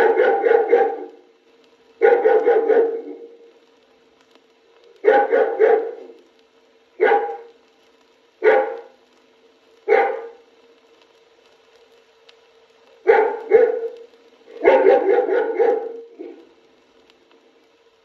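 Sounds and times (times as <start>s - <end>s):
dog barking: 0.0s - 1.2s, 2.0s - 3.4s, 5.0s - 6.2s, 7.0s - 7.6s, 8.4s - 9.0s, 9.9s - 10.4s, 13.0s - 16.5s
faint steady hum: 0.0s - 18.0s.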